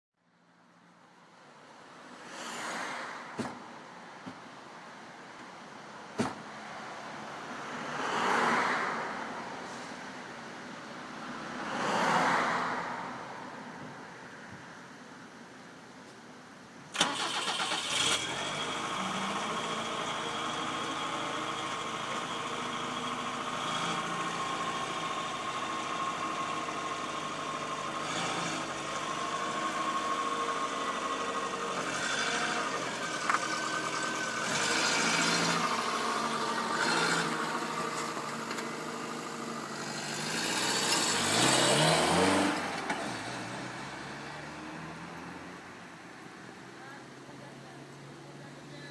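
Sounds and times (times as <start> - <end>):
car engine starting and idling: 16.8 - 45.4
car engine revving: 17.0 - 45.6.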